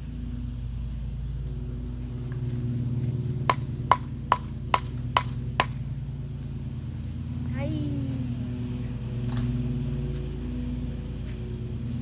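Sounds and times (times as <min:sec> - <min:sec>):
steady low hum: 0:00.0 - 0:12.0
sharp ringing knocks: 0:03.5 - 0:05.8.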